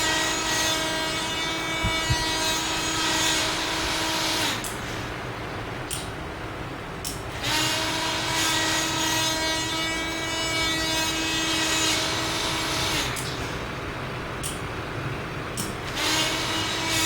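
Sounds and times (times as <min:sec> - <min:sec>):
drill motor whining: 0:00.0 - 0:05.1, 0:07.3 - 0:13.6, 0:15.8 - 0:17.0.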